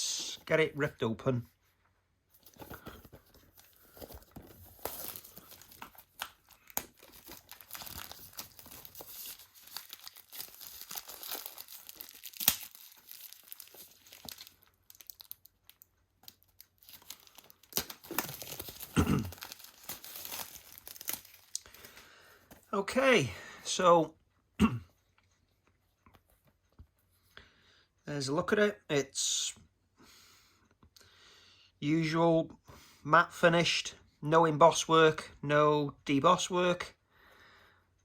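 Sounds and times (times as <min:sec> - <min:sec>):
packaging tearing and crinkling: 0:02.4 - 0:22.0.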